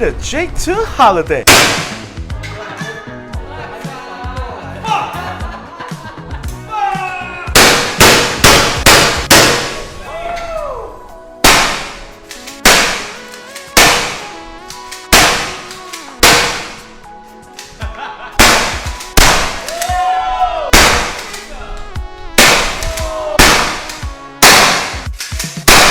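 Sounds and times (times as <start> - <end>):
faint music: 0.0 - 25.9
gunshots with ringing echo: 1.5 - 2.1, 7.6 - 10.0, 11.4 - 14.4, 15.1 - 17.0, 18.4 - 19.7, 20.7 - 21.5, 22.4 - 25.1, 25.7 - 25.9.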